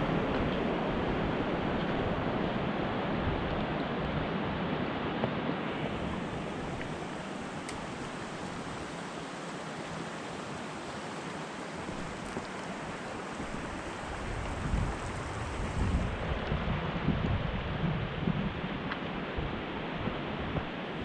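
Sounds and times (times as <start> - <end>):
mountain river rushing: 0.0 - 21.0
wind buffeting microphone: 11.8 - 21.0.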